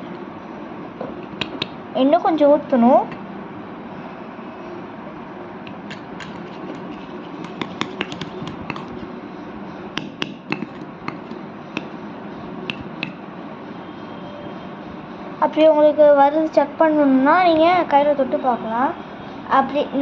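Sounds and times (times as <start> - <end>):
utensil tapping a bowl: 1.2 - 1.8, 5.7 - 9.0, 10.0 - 12.0, 12.7 - 13.2.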